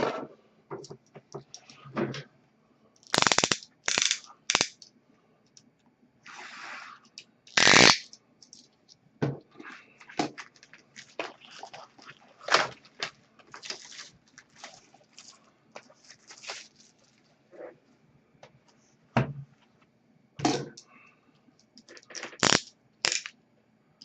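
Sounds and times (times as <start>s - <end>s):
soft scraping slide: 6.3s - 7.0s.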